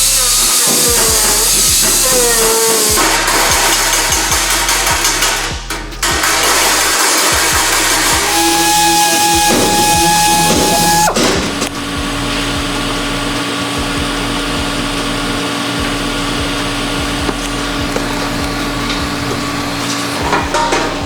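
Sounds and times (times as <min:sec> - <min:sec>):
machine whine: 0:06.0 - 0:21.0.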